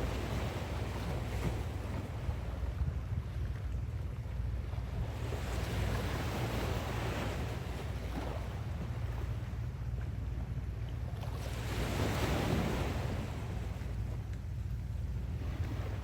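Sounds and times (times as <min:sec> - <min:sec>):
ocean waves on sandy beach: 0:00.0 - 0:02.4, 0:04.8 - 0:09.5, 0:11.2 - 0:14.1, 0:15.2 - 0:16.0.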